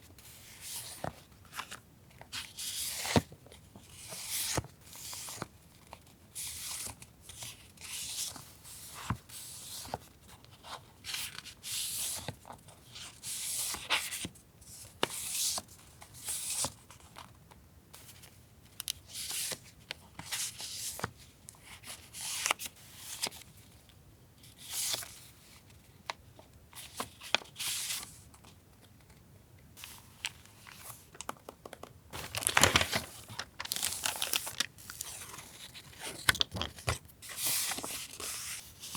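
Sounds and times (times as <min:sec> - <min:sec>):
paper rustling: 0:29.8 - 0:38.9.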